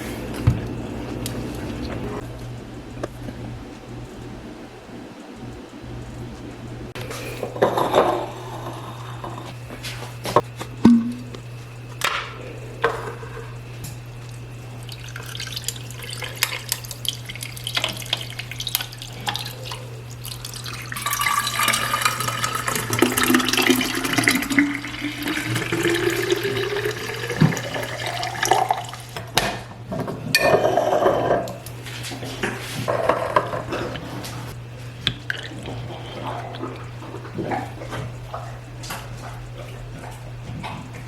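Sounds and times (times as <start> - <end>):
low hum: 10.4 - 16.0
water pouring into vessel: 14.8 - 29.1.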